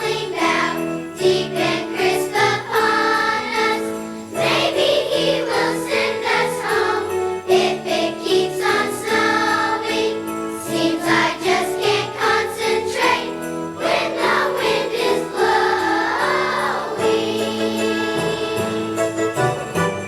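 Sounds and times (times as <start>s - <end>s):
children's choir singing: 0.0s - 19.8s
children's choir singing christmas song: 0.0s - 20.0s
musical accompaniment: 0.0s - 20.0s.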